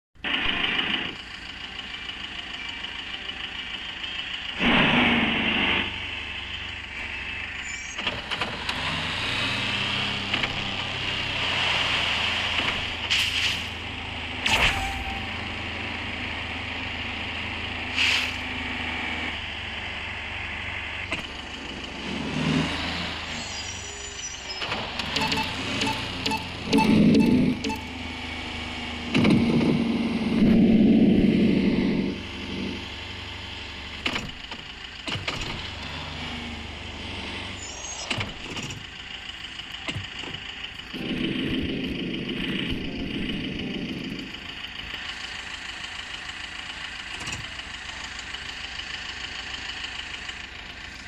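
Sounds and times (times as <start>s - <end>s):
vehicle engine running: 0.2s - 51.0s
vehicle knocks and jolts: 29.0s - 31.4s, 34.0s - 36.0s, 38.0s - 44.2s.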